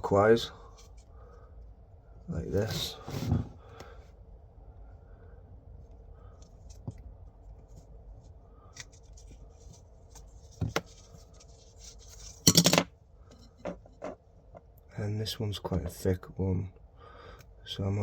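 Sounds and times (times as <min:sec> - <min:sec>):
tape rubbing and handling: 0:06.4 - 0:12.5.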